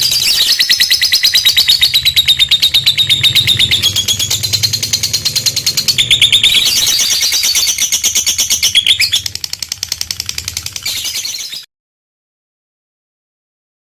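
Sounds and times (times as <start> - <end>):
lovebird shrill chatter: 0.0 - 11.7.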